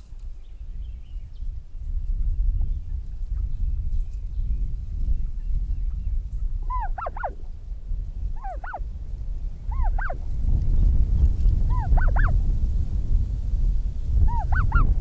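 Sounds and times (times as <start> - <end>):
steady low rumble: 0.0 - 15.0
goose honking: 6.7 - 7.4, 8.4 - 8.8, 9.7 - 10.2, 11.7 - 12.3, 14.3 - 14.9.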